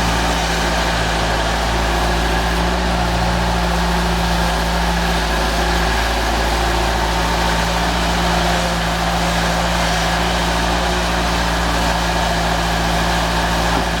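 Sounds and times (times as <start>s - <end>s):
diesel engine running steadily: 0.0s - 14.0s.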